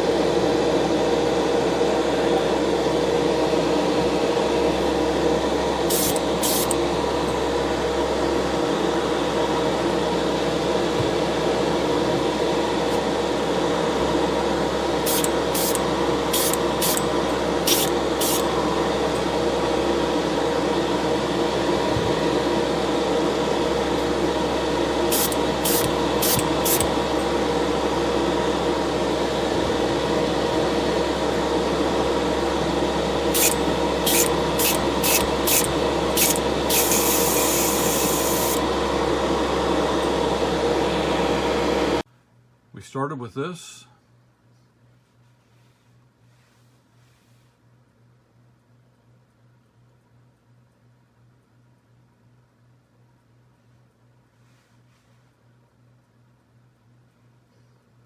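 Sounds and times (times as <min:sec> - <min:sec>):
steady machine hum: 0:00.0 - 0:42.6.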